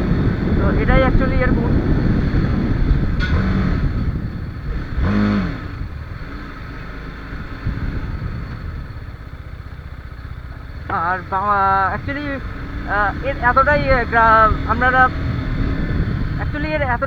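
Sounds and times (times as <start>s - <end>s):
wind rush: 0.0s - 6.3s, 7.3s - 9.2s, 11.8s - 17.0s
motorcycle engine riding: 0.0s - 17.0s.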